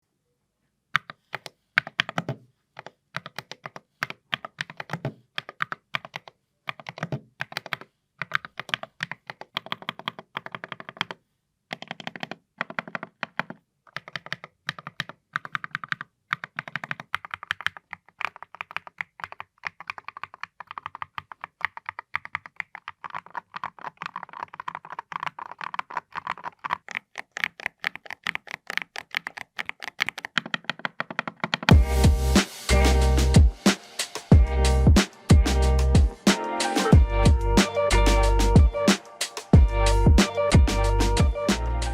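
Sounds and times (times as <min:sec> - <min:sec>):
keyboard typing clicks: 0:01.0 - 0:31.7.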